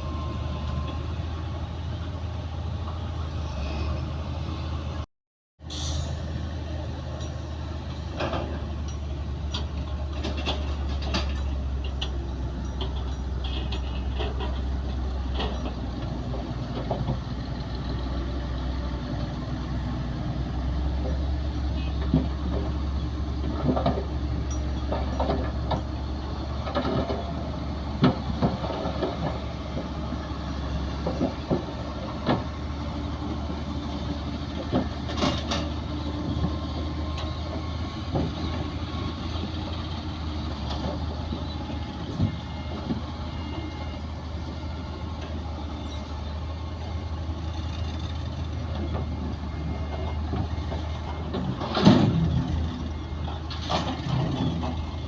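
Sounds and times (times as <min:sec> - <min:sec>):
bulldozer diesel engine running: 0:00.0 - 0:05.1, 0:05.7 - 0:55.0
metal knocks and clanks: 0:08.1 - 0:17.2, 0:49.9 - 0:52.6.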